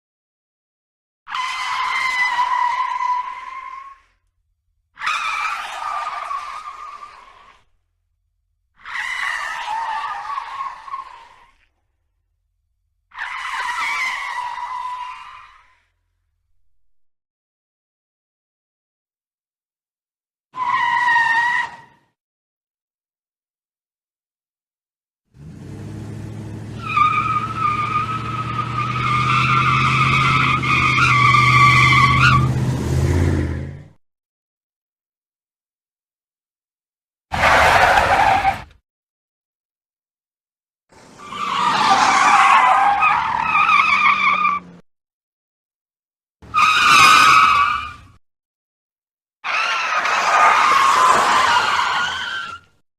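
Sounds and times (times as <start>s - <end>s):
car tyres screeching: 1.3s - 4.2s, 5.0s - 7.7s, 8.8s - 11.6s, 13.1s - 15.9s, 20.6s - 22.0s, 25.4s - 34.0s, 37.3s - 38.8s, 41.0s - 44.8s, 46.4s - 48.2s, 49.5s - 52.7s
car engine running: 25.4s - 26.8s.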